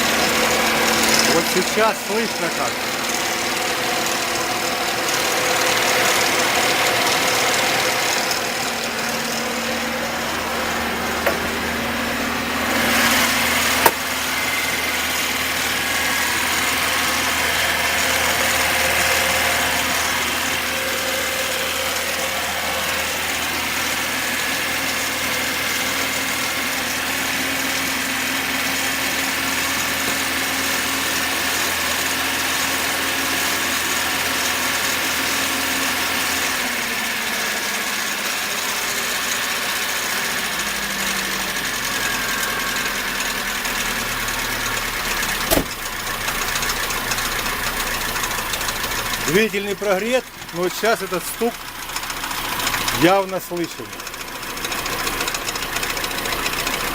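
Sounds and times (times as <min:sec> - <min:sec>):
engine idling with a knock: 0:00.0 - 0:38.0, 0:38.7 - 0:56.9
sharp click: 0:45.5 - 0:45.8.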